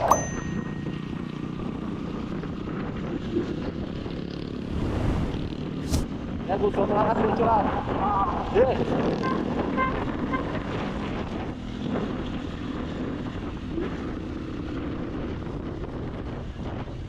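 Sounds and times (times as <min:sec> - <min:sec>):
motorcycle running: 0:00.0 - 0:04.8, 0:05.4 - 0:17.0
wind noise on microphone: 0:04.5 - 0:06.5.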